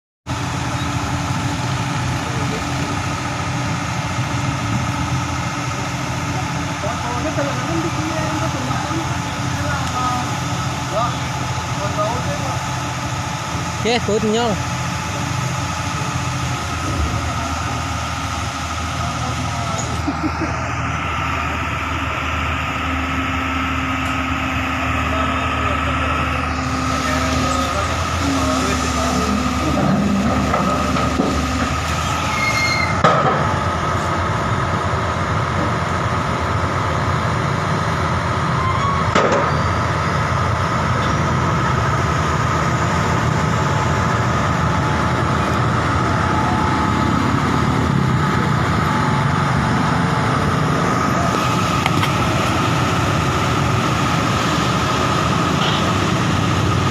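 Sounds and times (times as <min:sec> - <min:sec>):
excavator diesel engine running: 0:00.3 - 0:56.9
high whine: 0:15.7 - 0:35.0.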